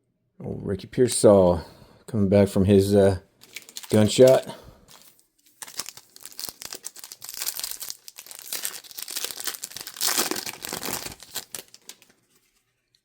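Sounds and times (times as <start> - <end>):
wrapper crinkling and tearing: 3.4 - 13.0.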